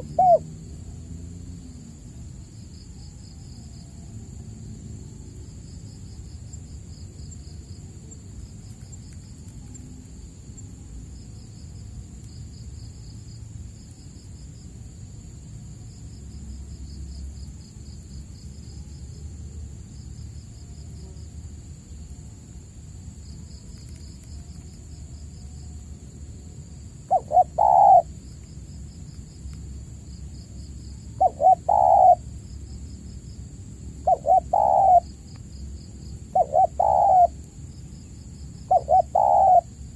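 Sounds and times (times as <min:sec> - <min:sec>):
dove cooing: 0:00.0 - 0:00.5, 0:27.1 - 0:28.1, 0:31.2 - 0:32.2, 0:34.0 - 0:35.1, 0:36.3 - 0:37.4, 0:38.6 - 0:39.7
insects chirping: 0:00.0 - 0:39.9.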